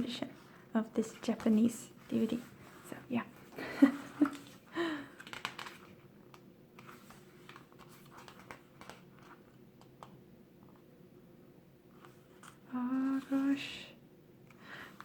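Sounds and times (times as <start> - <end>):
packaging clicks and rustles: 4.2 - 10.1.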